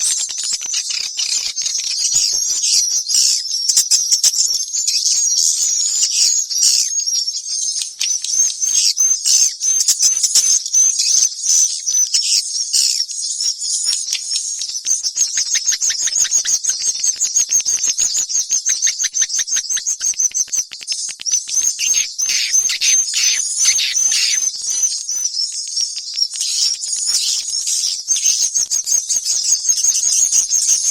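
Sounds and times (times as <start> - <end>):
swiftlet twittering chirps: 13.4 - 30.9.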